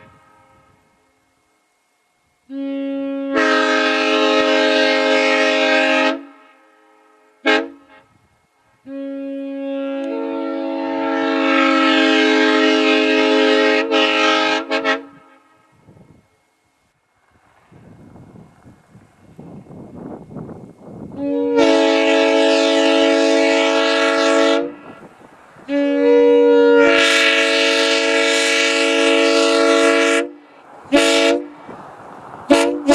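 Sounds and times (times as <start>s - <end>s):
locomotive air horn blasts: 0.0s - 1.2s, 2.4s - 16.0s, 21.0s - 31.7s, 32.4s - 32.9s.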